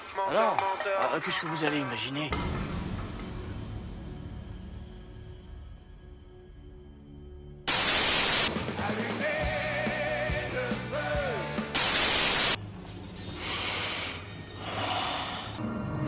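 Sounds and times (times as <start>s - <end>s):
loud static bursts: 7.7s - 8.5s, 11.7s - 12.6s.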